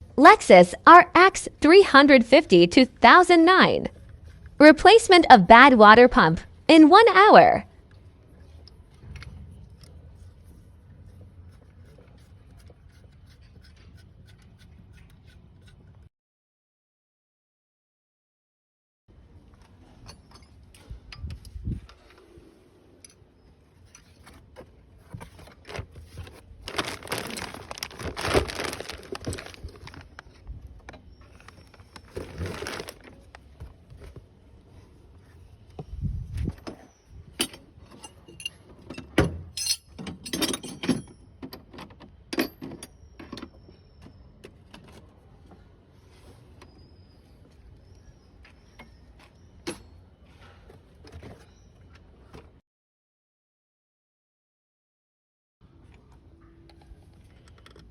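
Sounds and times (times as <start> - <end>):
scraping and rustling: 23.8 - 30.5, 31.3 - 34.2
metal tools clinking: 37.4 - 41.3.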